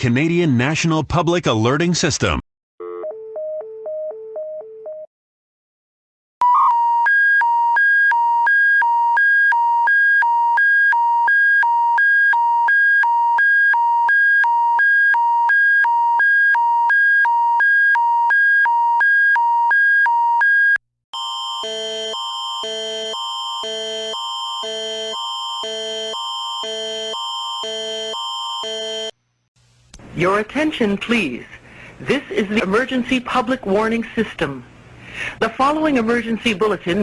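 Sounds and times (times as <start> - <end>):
buzzy multi-tone alarm: 21.2 - 29.1.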